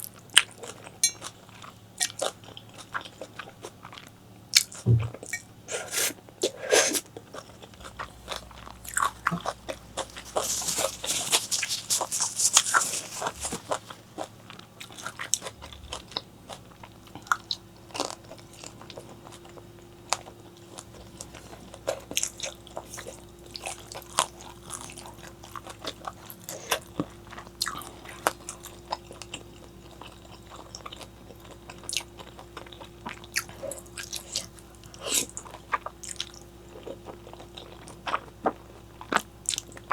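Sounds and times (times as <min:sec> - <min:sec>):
crunchy chewing: 0:00.0 - 0:39.9
faint steady hum: 0:00.0 - 0:39.9.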